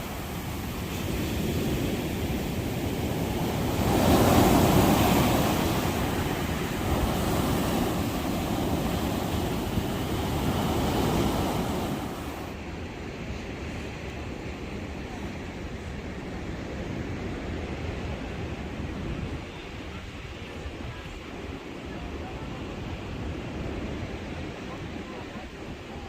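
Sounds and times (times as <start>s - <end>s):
wave crashing: 0.0s - 12.6s
waves breaking on beach: 0.0s - 26.0s.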